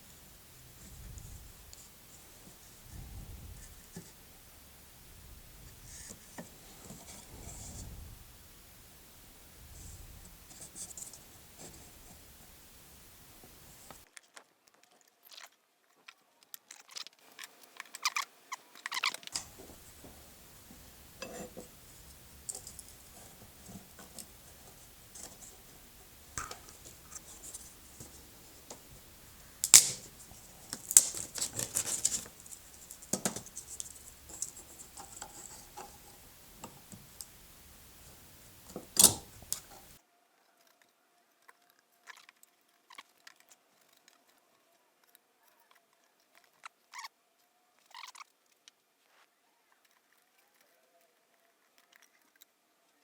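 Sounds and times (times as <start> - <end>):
wooden pieces clicking and rustling: 18.9 - 40.0
sharp snaps: 19.3 - 40.0.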